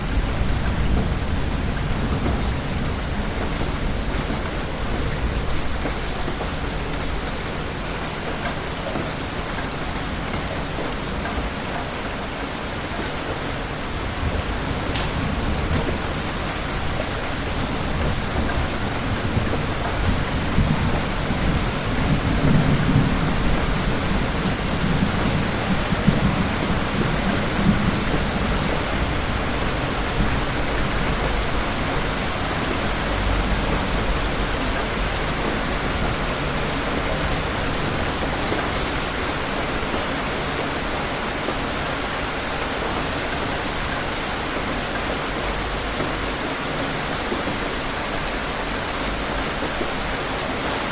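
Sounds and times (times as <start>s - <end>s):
thunder rumbling: 0.0s - 7.5s, 13.6s - 43.9s
heavy rain: 0.0s - 50.9s.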